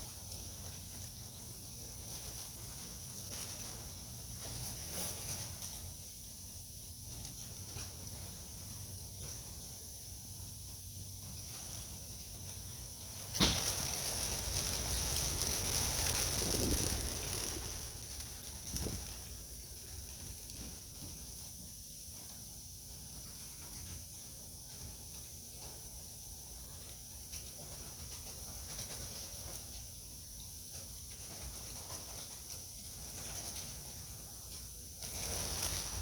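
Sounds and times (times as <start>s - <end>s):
insect drone: 5.2s - 22.6s
pigeon wings flapping: 12.7s - 21.1s, 35.0s - 36.0s.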